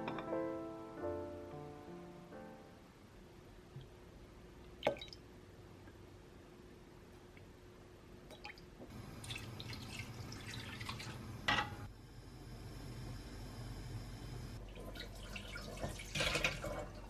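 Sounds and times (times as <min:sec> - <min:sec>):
tap water running into sink: 0:14.8 - 0:17.0.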